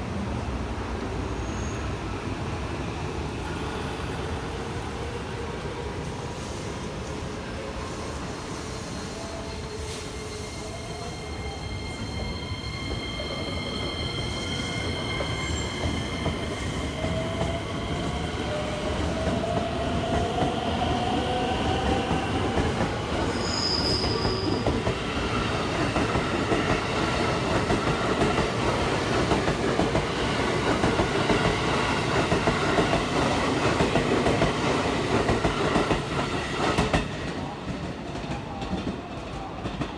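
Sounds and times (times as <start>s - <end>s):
train wheels clattering on rail: 14.6s - 39.9s.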